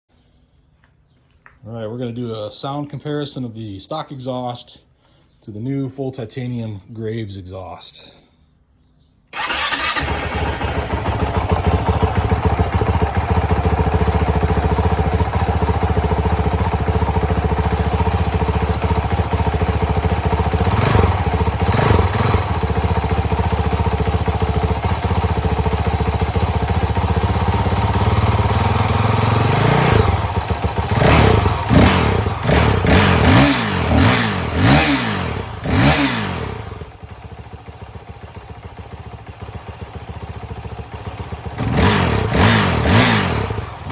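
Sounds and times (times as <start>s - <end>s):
dirt bike engine idling and revving: 9.4s - 43.9s.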